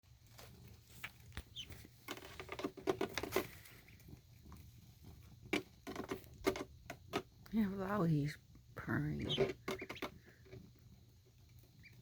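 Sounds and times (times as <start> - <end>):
ducklings peeping: 1.0 - 4.7, 7.7 - 12.0.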